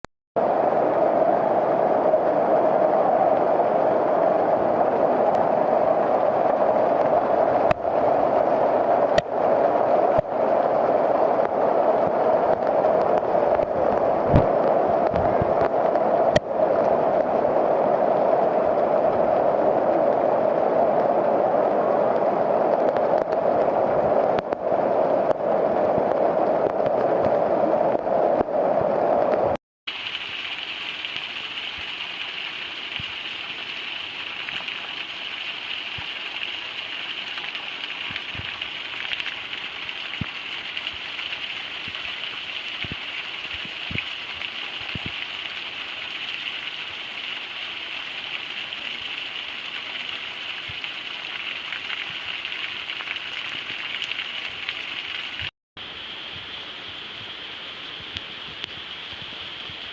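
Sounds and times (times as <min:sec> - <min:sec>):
heavy rush of water: 0:00.4 - 0:59.9
light rain hiss: 0:00.4 - 0:59.9.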